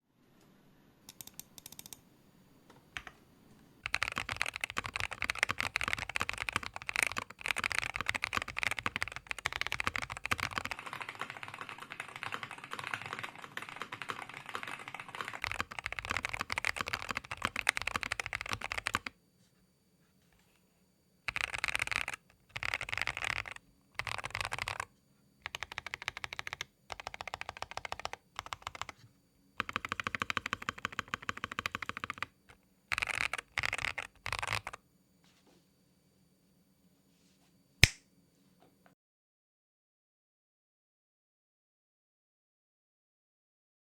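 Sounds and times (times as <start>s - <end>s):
mechanical keyboard typing: 1.1s - 2.0s, 3.8s - 19.1s, 21.3s - 29.0s, 29.6s - 34.8s.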